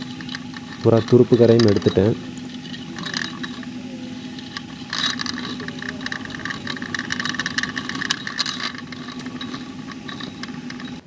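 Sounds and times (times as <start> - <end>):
hands scratching and clicking fan parts: 0.0 - 11.0
steady low hum: 0.0 - 11.0.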